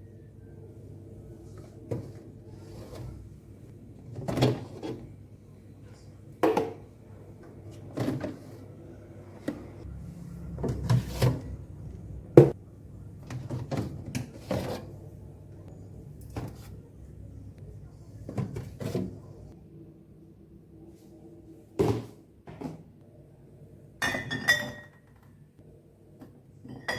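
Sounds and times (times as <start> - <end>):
refrigerator drawers and containers clattering: 4.0 - 5.2, 7.6 - 9.8, 10.6 - 11.6, 13.2 - 15.0, 18.3 - 19.5.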